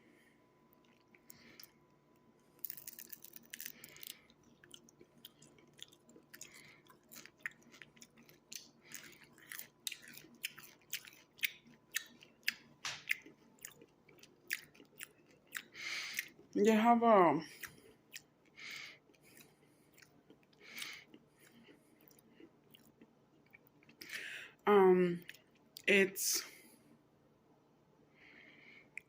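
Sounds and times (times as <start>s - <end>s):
person chewing crunchy food: 0.8s - 1.8s, 2.6s - 16.6s, 17.5s - 24.2s.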